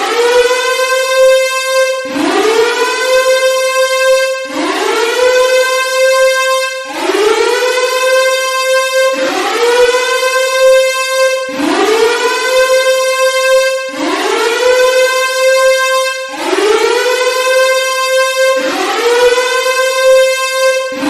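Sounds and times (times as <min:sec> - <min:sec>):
siren wailing: 0:00.0 - 0:21.0.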